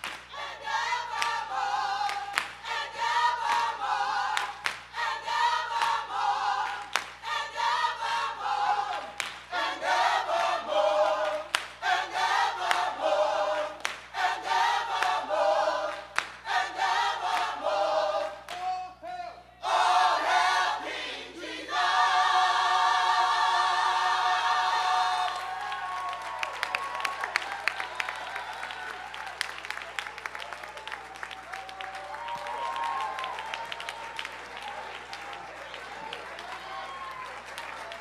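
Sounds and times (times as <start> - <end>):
gospel choir singing: 0.0 - 19.0, 19.6 - 26.2.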